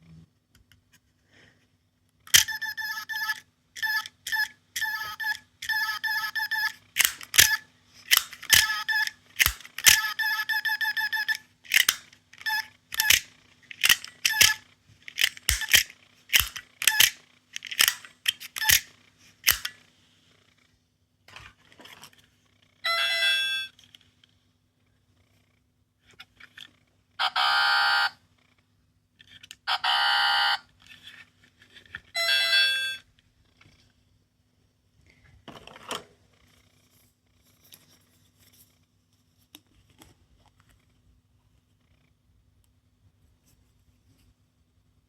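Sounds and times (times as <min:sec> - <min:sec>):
electronic toy clicking: 0:02.3 - 0:19.8.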